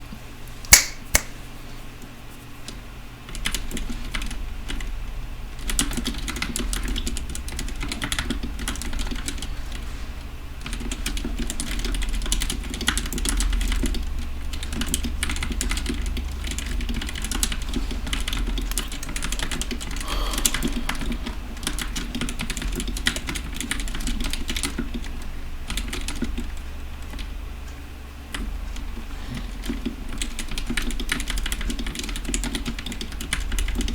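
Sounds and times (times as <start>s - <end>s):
sharp click: 0.7s - 1.4s
fast mechanical keyboard typing: 3.3s - 4.9s, 5.5s - 9.8s, 10.6s - 27.3s, 29.5s - 33.9s
low steady hum: 4.7s - 31.7s.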